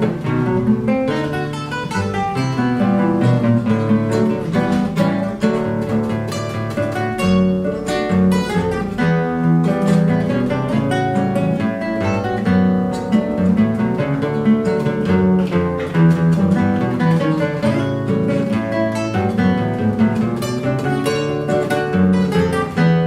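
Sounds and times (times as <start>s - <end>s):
acoustic guitar duet: 0.0s - 23.0s.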